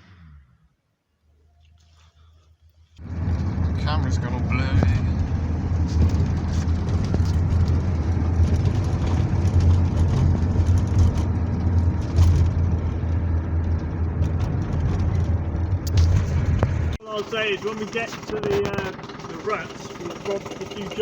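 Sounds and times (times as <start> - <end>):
vehicle engine running: 3.0 - 21.0
knocks and rattles: 4.8 - 21.0.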